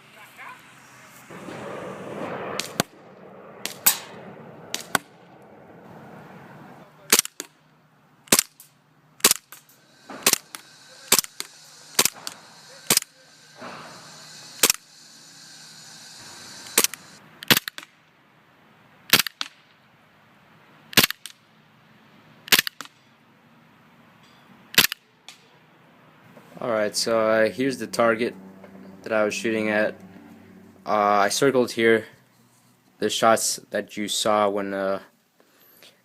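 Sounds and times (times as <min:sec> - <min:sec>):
steady hiss: 0:00.0 - 0:04.2, 0:05.9 - 0:18.0
airsoft pistol shots: 0:01.3 - 0:05.2, 0:07.1 - 0:07.5, 0:08.3 - 0:08.6, 0:09.2 - 0:13.9, 0:14.6 - 0:14.9, 0:16.6 - 0:17.9, 0:19.1 - 0:19.6, 0:22.5 - 0:22.9.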